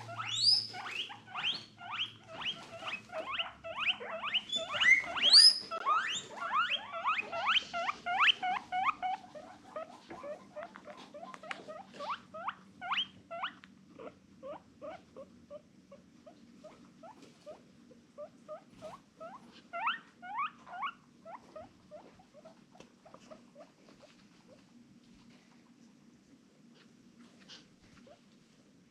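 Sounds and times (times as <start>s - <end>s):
guinea pig squeaking: 0.0s - 24.7s
faint low hum: 0.0s - 28.9s.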